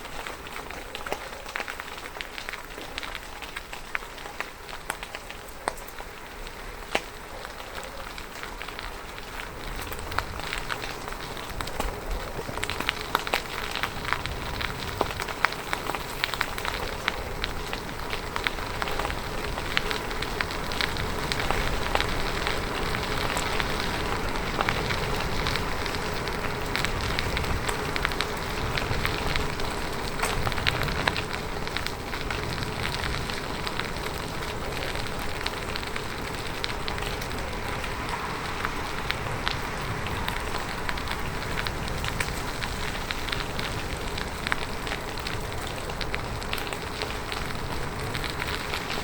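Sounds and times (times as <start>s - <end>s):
bicycle tyres rolling on rough surface: 0.0s - 49.0s.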